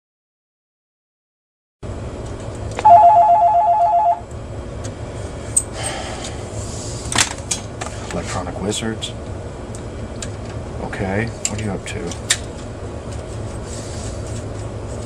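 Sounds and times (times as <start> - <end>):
low hum: 2.7 - 4.5
telephone ringing warble: 2.8 - 4.3.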